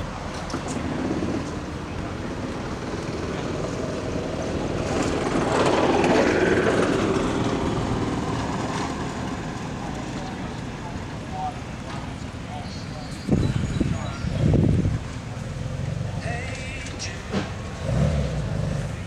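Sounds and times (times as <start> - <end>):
vehicle engine passing by: 17.2 - 19.0.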